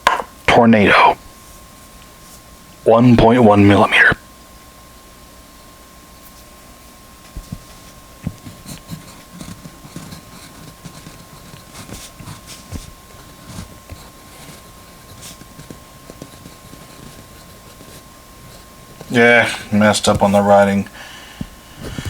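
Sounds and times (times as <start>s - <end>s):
pencil scratching on paper: 8.3s - 20.5s.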